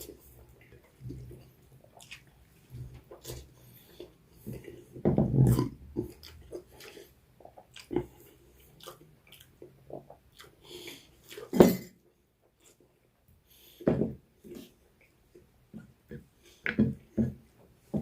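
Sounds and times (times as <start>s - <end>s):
person chewing food: 0.0s - 11.6s.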